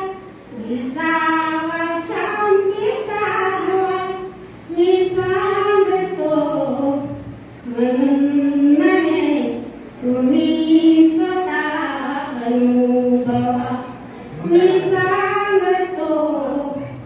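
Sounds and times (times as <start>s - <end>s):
woman singing unaccompanied: 0.0s - 17.0s.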